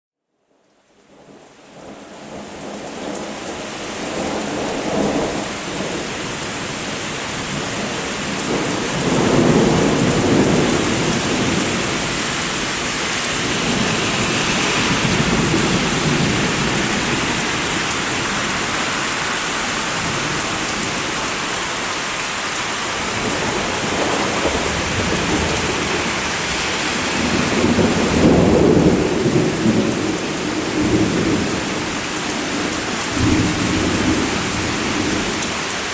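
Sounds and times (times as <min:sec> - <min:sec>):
heavy rain: 0:00.4 - 0:35.9
rolling thunder: 0:07.4 - 0:18.9, 0:23.0 - 0:35.4.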